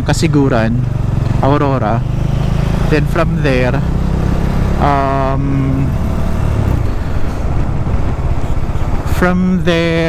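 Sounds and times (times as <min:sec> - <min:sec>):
motorcycle engine and road rumble: 0:00.0 - 0:10.0
person speaking: 0:02.9 - 0:03.9, 0:04.8 - 0:06.0.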